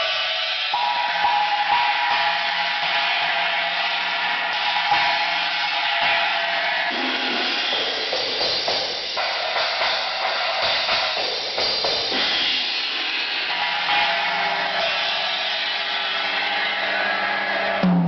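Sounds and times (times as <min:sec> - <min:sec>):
china cymbal crashes: 0:00.0 - 0:18.0
drum hits: 0:06.9 - 0:18.0.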